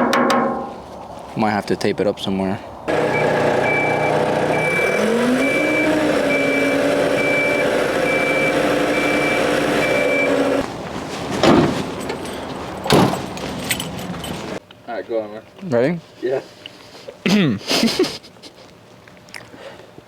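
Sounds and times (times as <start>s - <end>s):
warning alarm beeping: 2.9s - 10.6s
lift engine running: 2.9s - 10.7s.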